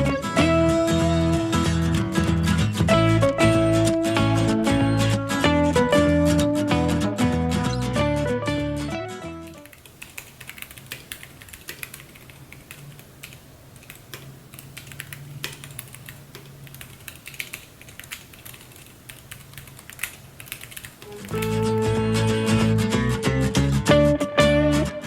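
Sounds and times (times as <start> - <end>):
guitar music: 0.0 - 9.7, 21.0 - 25.0
mechanical keyboard typing: 9.5 - 21.6.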